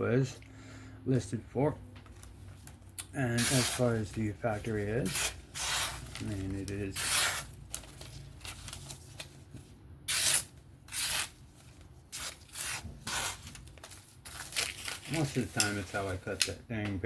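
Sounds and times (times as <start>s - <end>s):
knife slicing paper: 3.4s - 9.3s, 10.1s - 11.4s, 12.1s - 16.2s.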